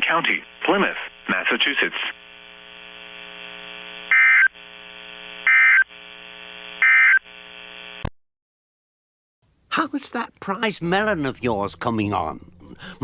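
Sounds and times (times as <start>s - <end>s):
electronic data bursts: 4.1s - 4.6s, 5.4s - 6.0s, 6.8s - 7.3s.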